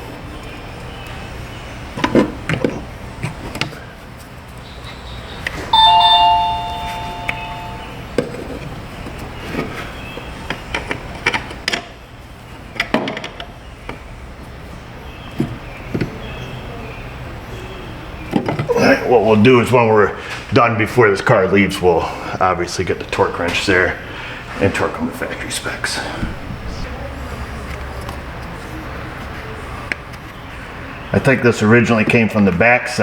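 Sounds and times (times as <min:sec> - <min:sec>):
two-tone metallic ring: 0:05.8 - 0:08.1.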